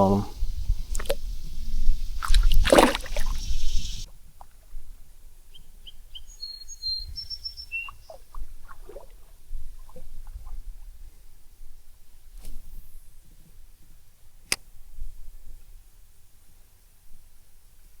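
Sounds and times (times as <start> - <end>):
birds chirping: 0.0 - 4.1, 5.5 - 8.9
water splash: 0.9 - 1.3, 2.1 - 4.1, 8.0 - 10.0.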